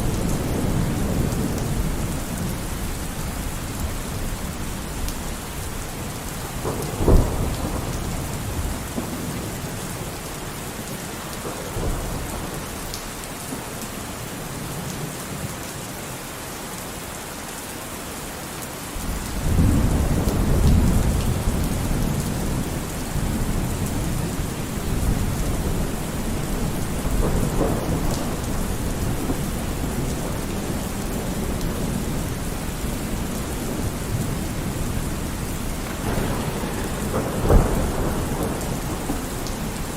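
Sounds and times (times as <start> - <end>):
low rolling thunder rumble: 0.0 - 12.9, 19.0 - 39.9
heavy rain: 0.0 - 39.9
thunder crack: 6.6 - 9.8, 19.4 - 39.9.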